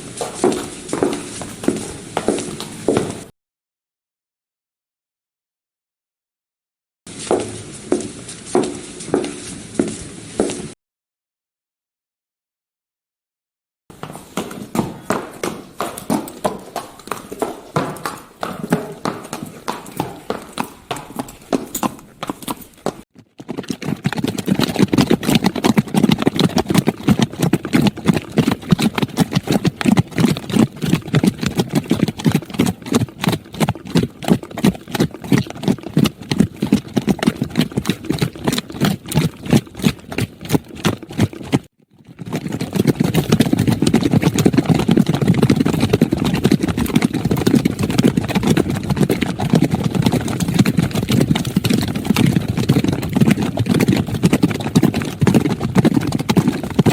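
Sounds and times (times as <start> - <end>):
rhythmic clip-clop knocking: 13.9 - 56.9.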